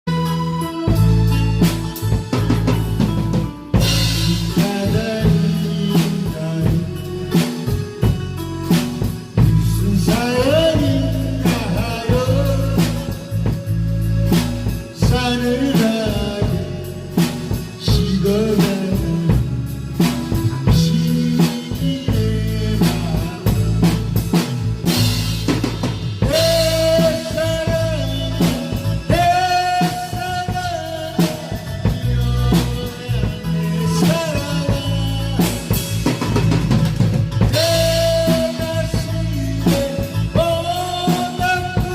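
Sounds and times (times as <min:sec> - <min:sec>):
drum kit beat: 0:00.0 - 0:41.9
trot song with singing and band: 0:00.1 - 0:41.9.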